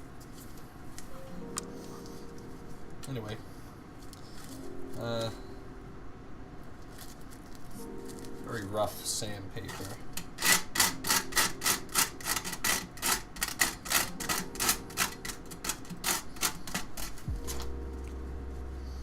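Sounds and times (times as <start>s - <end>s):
sandpaper rubbing on metal case: 9.7s - 17.6s.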